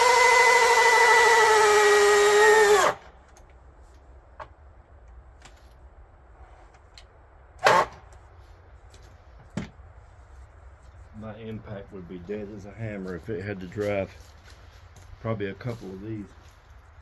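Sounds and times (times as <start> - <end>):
electric drill whining: 0.0 - 3.1.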